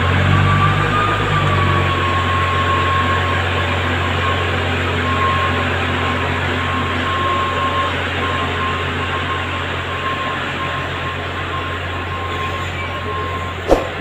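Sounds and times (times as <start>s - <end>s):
low hum: 13.7s - 14.0s
sharp clunk: 13.7s - 14.0s.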